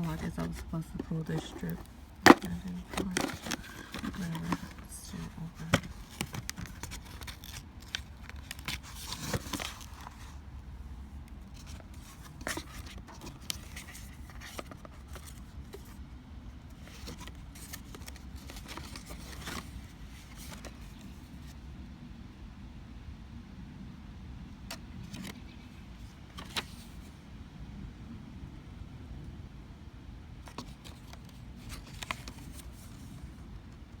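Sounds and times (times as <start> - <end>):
cardboard box being opened: 0.0 - 10.4, 11.6 - 16.0, 16.7 - 21.1, 30.5 - 33.4
packaging tearing and crinkling: 1.4 - 10.3.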